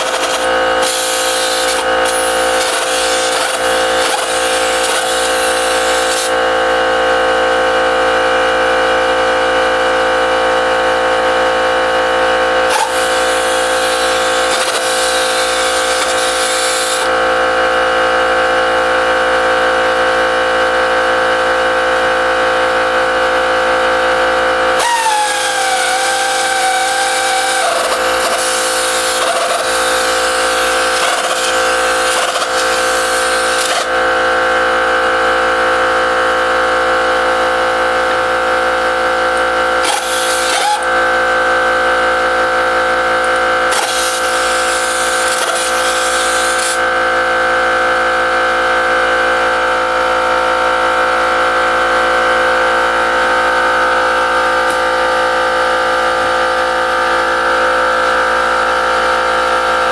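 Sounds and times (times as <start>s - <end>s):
power tool hissing bursts: 0.0s - 6.4s, 12.7s - 17.1s, 24.8s - 33.9s, 39.8s - 40.9s, 43.7s - 46.8s
motor droning: 0.0s - 17.8s, 23.0s - 59.9s.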